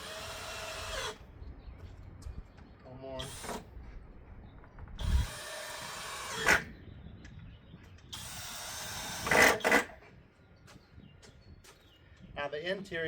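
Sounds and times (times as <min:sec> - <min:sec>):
power drill driving screws: 0:00.0 - 0:01.2, 0:03.2 - 0:03.7, 0:05.0 - 0:06.7, 0:08.1 - 0:10.0.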